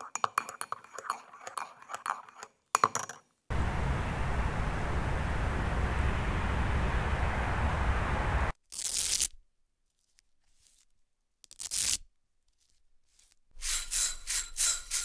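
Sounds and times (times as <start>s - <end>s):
low rumble with hiss: 3.5s - 8.5s.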